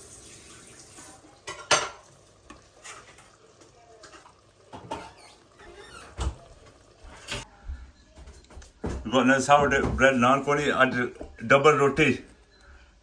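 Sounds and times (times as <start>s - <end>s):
kitchen things clattering: 0.8s - 3.4s, 4.0s - 7.5s, 8.1s - 11.4s.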